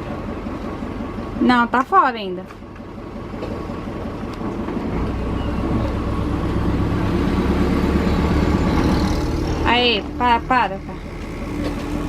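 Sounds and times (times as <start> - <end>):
motorhome engine running: 0.0 - 12.0.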